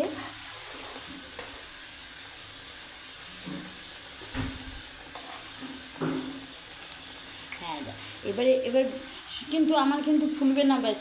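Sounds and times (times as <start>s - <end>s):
batter sizzling in hot oil: 0.0s - 11.0s.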